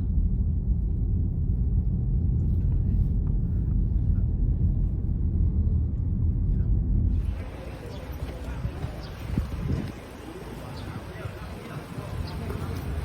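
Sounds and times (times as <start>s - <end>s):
car road rumble inside cabin: 0.0s - 9.9s.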